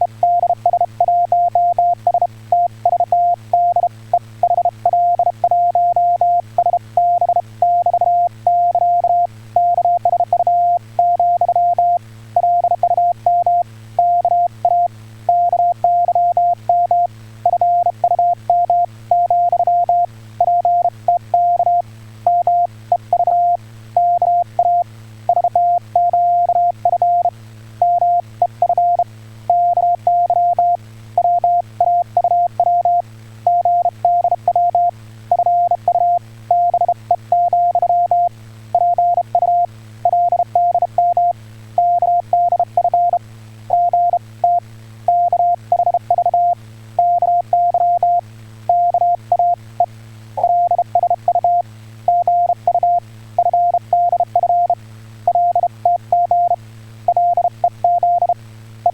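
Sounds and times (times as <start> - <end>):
morse code beeps: 0.0 - 49.6, 50.4 - 58.9
low steady hum: 0.0 - 58.9.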